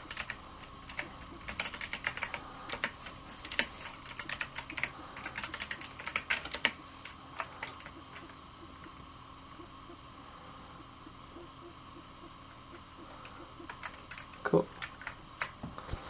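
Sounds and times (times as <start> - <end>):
computer keyboard typing: 0.0 - 8.4, 11.3 - 15.6.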